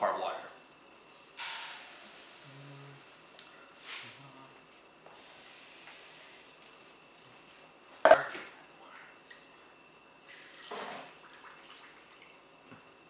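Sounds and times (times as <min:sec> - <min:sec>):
water pouring: 0:10.2 - 0:12.5.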